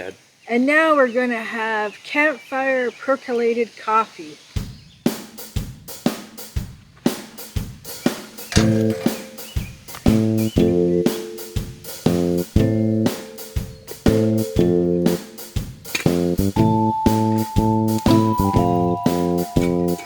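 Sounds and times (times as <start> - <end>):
drum kit beat: 4.6 - 20.0
bass: 8.5 - 9.1, 9.9 - 11.2, 11.8 - 13.2, 13.9 - 20.0
guitar chords: 8.6 - 9.4, 10.1 - 20.0.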